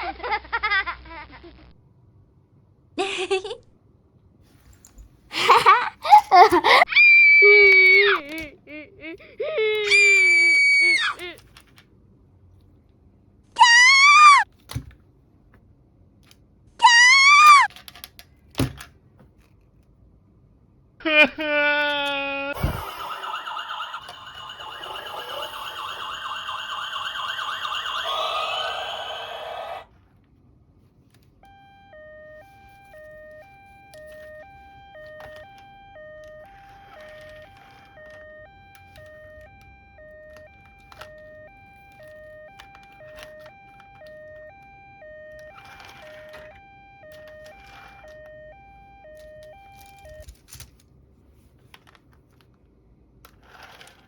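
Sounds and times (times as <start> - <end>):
handling rustles: 4.5 - 6.8
electronic toy siren: 9.8 - 11.4, 13.6 - 14.4, 16.8 - 17.7, 21.8 - 29.9, 31.4 - 50.3
two-note hi-lo siren: 22.6 - 29.9, 31.5 - 50.2.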